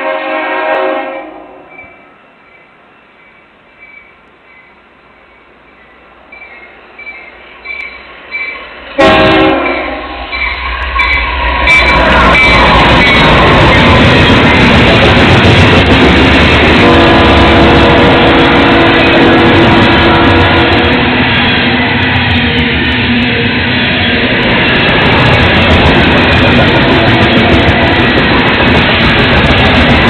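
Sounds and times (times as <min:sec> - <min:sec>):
train horn: 0:00.0 - 0:02.0, 0:09.0 - 0:13.8, 0:16.6 - 0:22.1, 0:26.7 - 0:28.2
train rumbling past: 0:00.0 - 0:30.0.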